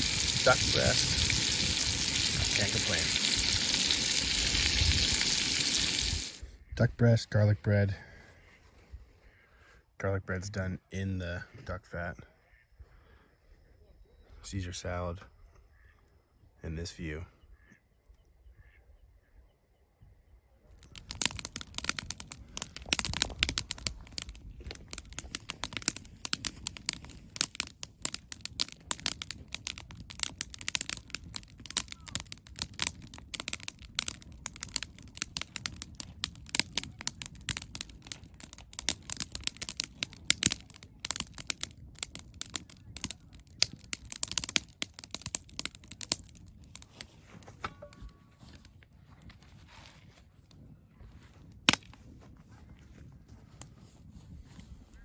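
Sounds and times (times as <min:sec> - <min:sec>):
wood fire crackling and popping: 0:00.0 - 0:06.4, 0:20.8 - 0:49.8, 0:51.4 - 0:55.0.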